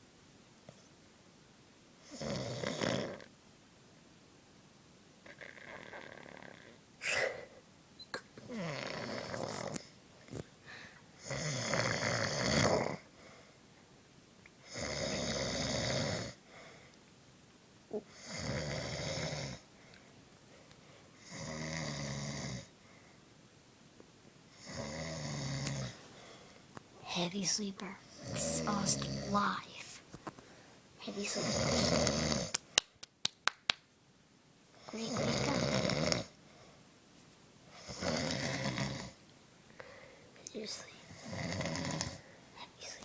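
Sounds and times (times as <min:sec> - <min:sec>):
man snoring: 0:02.1 - 0:03.3, 0:08.5 - 0:09.8, 0:11.2 - 0:13.0, 0:14.7 - 0:16.4, 0:18.2 - 0:19.6, 0:21.2 - 0:22.7, 0:24.6 - 0:26.0, 0:28.2 - 0:29.4, 0:31.3 - 0:32.5, 0:35.0 - 0:36.3, 0:37.8 - 0:39.2, 0:41.2 - 0:42.2.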